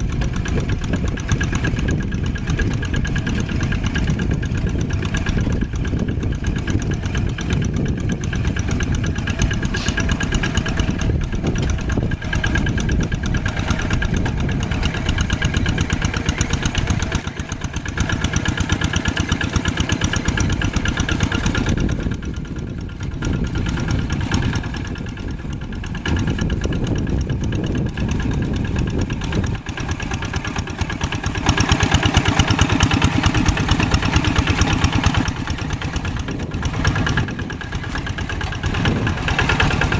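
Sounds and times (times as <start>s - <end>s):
old tractor engine running: 0.0s - 39.9s.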